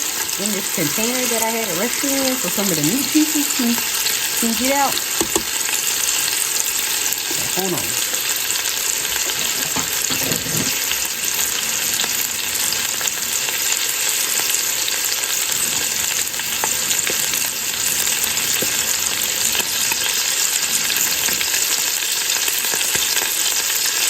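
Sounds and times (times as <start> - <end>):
grease popping: 0.0 - 24.0
meat sizzling in grease: 0.0 - 24.0.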